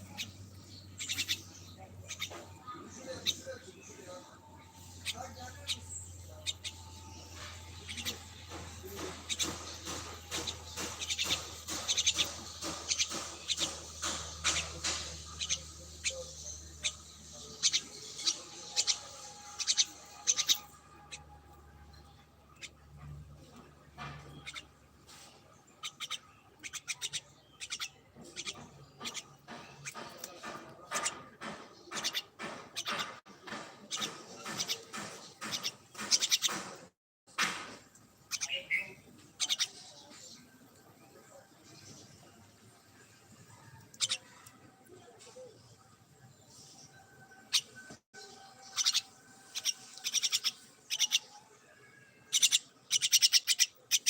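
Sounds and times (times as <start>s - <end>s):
birds chirping: 0.0s - 54.0s
high-pitched animal chirps: 48.7s - 51.3s.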